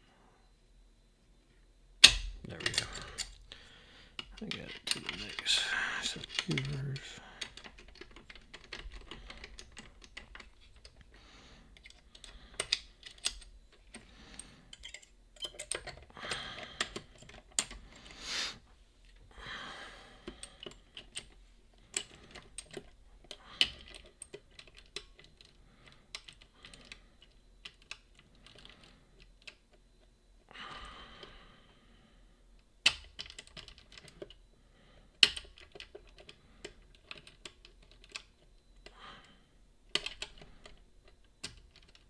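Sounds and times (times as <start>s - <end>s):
lock picking metallic clicks: 2.0s - 3.6s, 11.8s - 14.1s.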